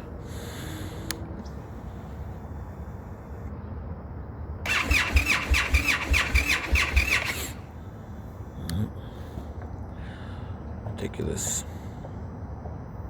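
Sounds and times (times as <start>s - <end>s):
electric starter cranking engine: 4.7s - 7.8s.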